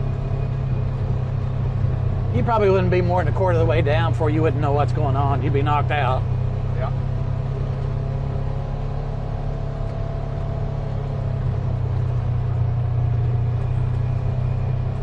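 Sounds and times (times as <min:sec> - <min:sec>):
utility vehicle engine droning: 0:00.0 - 0:15.0.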